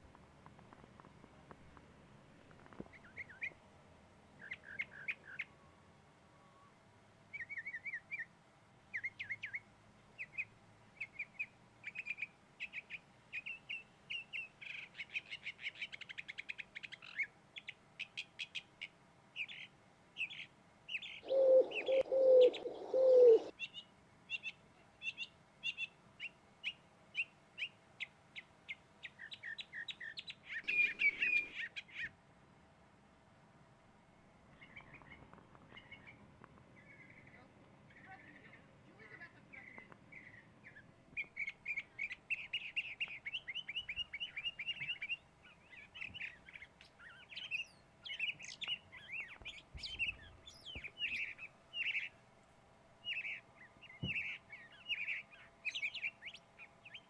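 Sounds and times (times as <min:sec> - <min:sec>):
songbirds chirping: 0:00.0 - 0:57.0
low cooing notes: 0:21.2 - 0:23.5.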